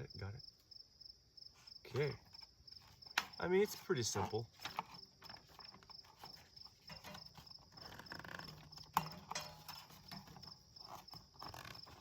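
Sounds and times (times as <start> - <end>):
cricket chirping: 0.0 - 12.0
parts knocking and clunking: 4.6 - 12.0.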